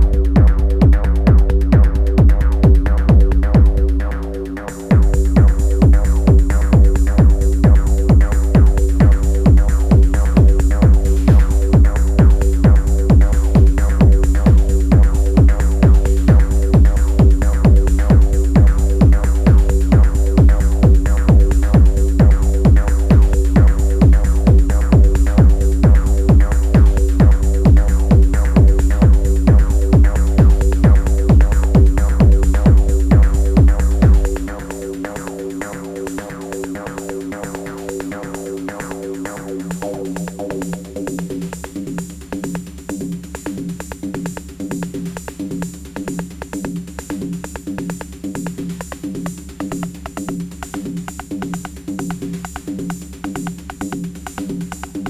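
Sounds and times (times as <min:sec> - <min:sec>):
synth drone: 0:00.0 - 0:41.2
hi-hats: 0:00.0 - 0:55.0
kick drum pattern: 0:00.0 - 0:55.0.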